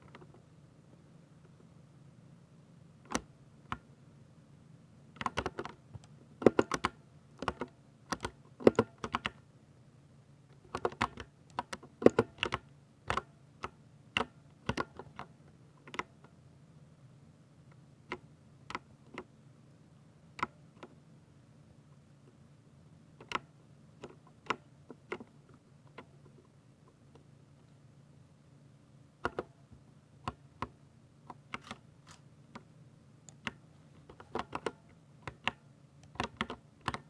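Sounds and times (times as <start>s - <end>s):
mechanical keyboard typing: 5.2s - 9.4s, 10.6s - 13.3s, 33.3s - 37.0s.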